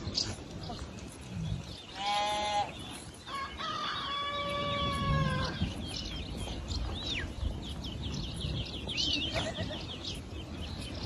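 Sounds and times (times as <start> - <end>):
small birds chirping: 0.0 - 11.0
rooster crowing: 3.3 - 5.5.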